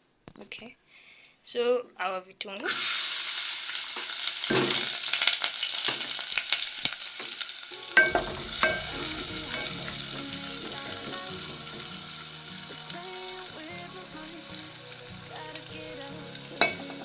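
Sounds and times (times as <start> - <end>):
onions sizzling in oil: 2.7 - 17.0
spoon knocking against pot: 8.0 - 9.0.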